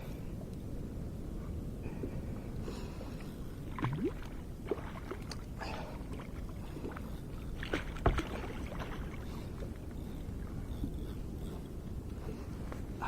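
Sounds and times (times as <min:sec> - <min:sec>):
steady low rumble: 0:00.0 - 0:13.0
water splashing around kayak: 0:01.9 - 0:13.0.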